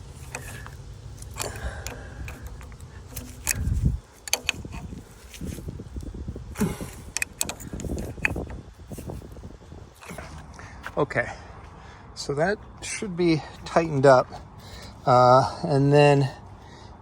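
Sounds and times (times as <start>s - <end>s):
wrench clicking: 0.0s - 9.3s
metal clinking: 0.0s - 9.4s.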